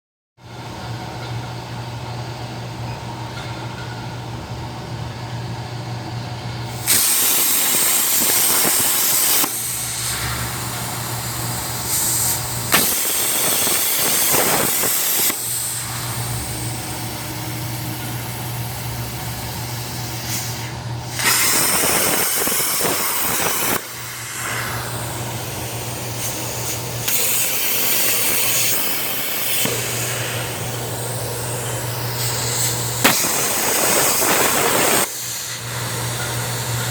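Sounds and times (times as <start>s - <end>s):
loud hissing noise: 6.7s - 36.9s
machine low hum: 15.4s - 21.2s.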